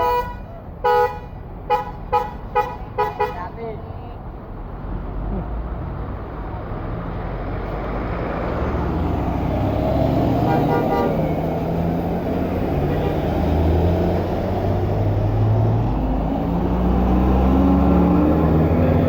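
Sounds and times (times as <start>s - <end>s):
bus horn: 0.0s - 3.6s, 10.4s - 11.5s, 12.7s - 13.6s
bus engine running: 0.0s - 19.0s.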